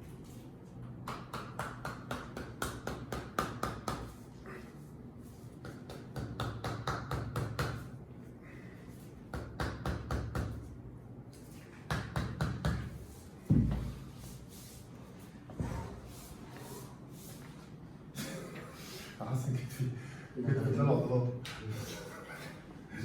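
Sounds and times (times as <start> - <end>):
hands tapping and slapping body: 0.8 - 4.2, 5.5 - 7.9, 9.3 - 10.8, 11.8 - 14.0
heavy thump: 13.5 - 14.0.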